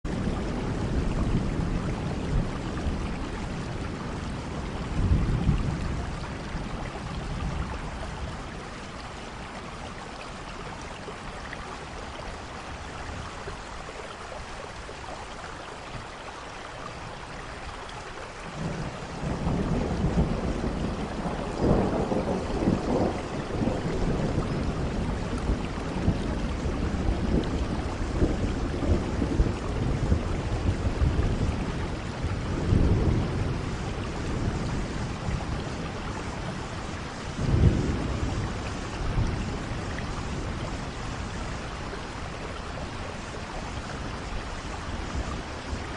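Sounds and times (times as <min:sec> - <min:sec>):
steady rain: 0:00.0 - 0:45.9
low thunder rumble: 0:00.1 - 0:13.8, 0:18.4 - 0:45.9.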